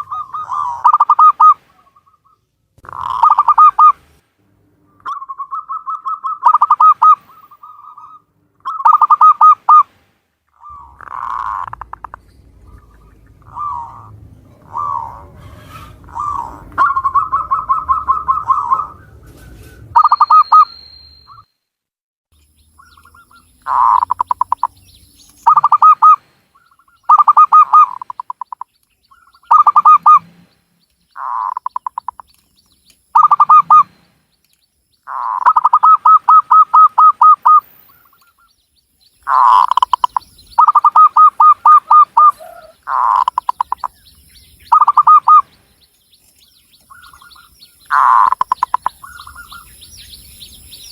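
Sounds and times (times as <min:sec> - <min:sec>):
dove cooing: 0:00.0 - 0:04.0, 0:05.0 - 0:09.8, 0:10.6 - 0:20.5, 0:22.8 - 0:24.8, 0:25.5 - 0:28.6, 0:29.2 - 0:30.3, 0:33.2 - 0:33.9, 0:35.1 - 0:37.7, 0:39.2 - 0:44.0, 0:44.6 - 0:45.5, 0:46.8 - 0:49.8.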